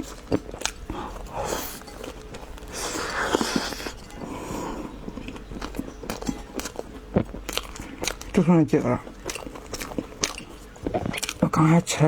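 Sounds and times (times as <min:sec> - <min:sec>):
breathy mouth sounds eating: 0:00.0 - 0:12.0
soft chewing clicks: 0:00.0 - 0:12.0.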